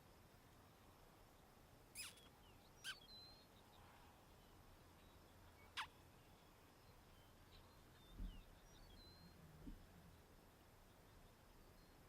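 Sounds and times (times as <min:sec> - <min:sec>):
faint bird chirps: 0:01.9 - 0:12.0
sharp bird calls dropping in pitch: 0:02.0 - 0:03.1.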